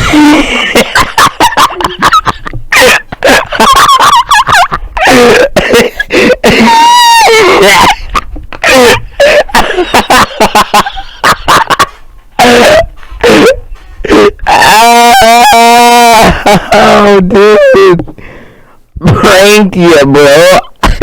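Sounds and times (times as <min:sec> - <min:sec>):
man wavering wail: 0:06.4 - 0:10.2, 0:12.4 - 0:18.0
man hiccuping loudly: 0:12.4 - 0:18.0.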